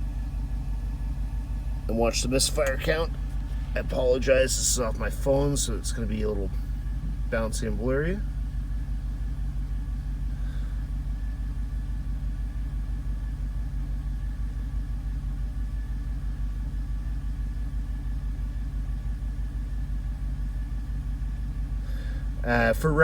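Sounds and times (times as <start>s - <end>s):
car engine idling: 0.0s - 23.0s.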